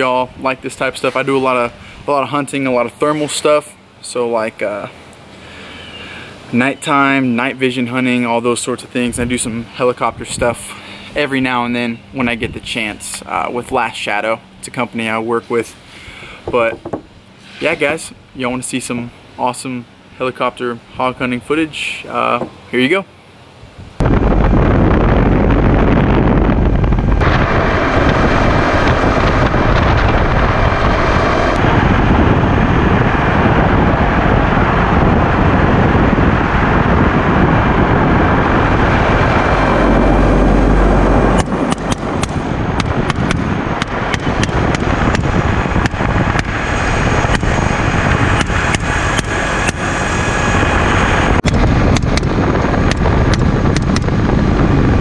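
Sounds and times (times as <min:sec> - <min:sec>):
wind buffeting on microphone: 0:00.0 - 0:03.6, 0:09.0 - 0:13.8, 0:23.6 - 0:55.0
helicopter rotor and engine noise: 0:00.0 - 0:19.0, 0:24.0 - 0:55.0.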